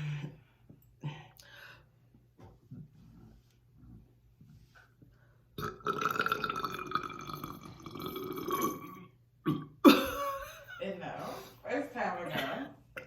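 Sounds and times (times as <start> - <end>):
long burp: 5.6 - 10.1.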